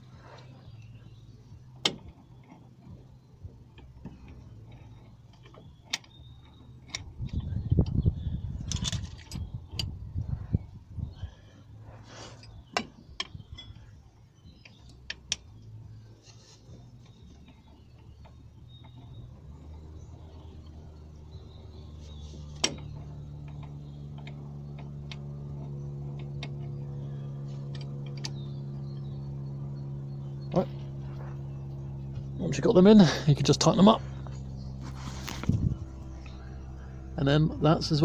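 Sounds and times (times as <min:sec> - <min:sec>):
metallic clicks of tools and bolts: 0:03.7 - 0:10.0, 0:12.4 - 0:14.0, 0:22.5 - 0:29.1.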